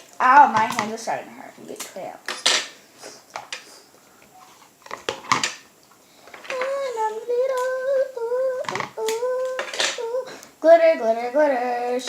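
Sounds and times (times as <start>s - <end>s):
child humming a tune: 6.5s - 10.4s.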